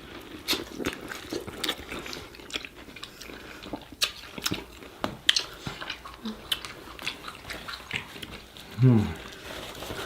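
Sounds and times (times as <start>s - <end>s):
chewing: 0.0s - 10.0s
wet mouth clicks and smacks: 3.7s - 8.3s.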